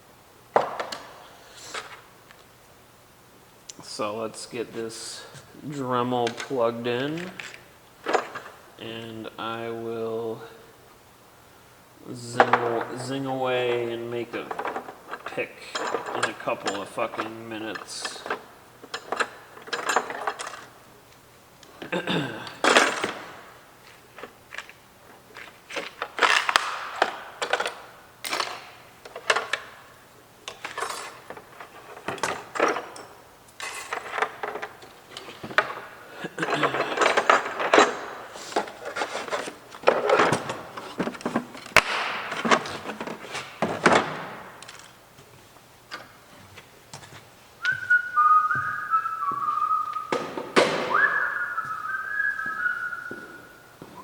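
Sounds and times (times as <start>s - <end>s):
rustling and light knocks: 36.8s - 54.0s
person whistling a tune: 47.6s - 50.2s, 50.8s - 54.0s.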